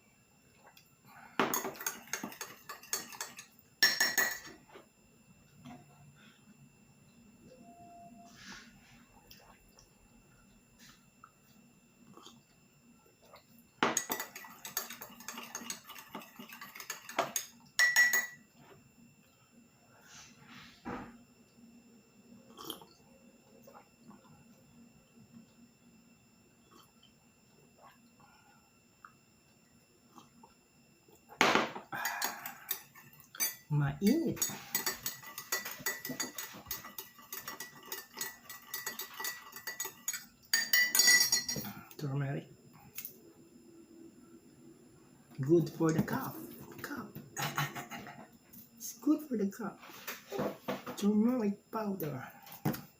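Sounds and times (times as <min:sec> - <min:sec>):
metal spoon clinking in a cup: 0:01.5 - 0:04.5, 0:13.9 - 0:15.9, 0:16.8 - 0:18.4, 0:32.0 - 0:33.7, 0:34.4 - 0:41.7.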